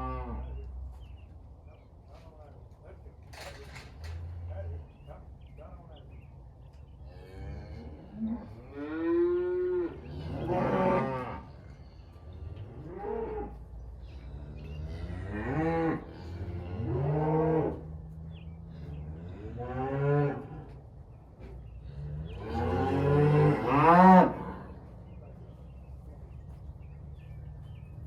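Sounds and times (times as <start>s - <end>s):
cattle mooing: 7.2s - 11.6s, 14.2s - 17.9s, 22.0s - 24.7s.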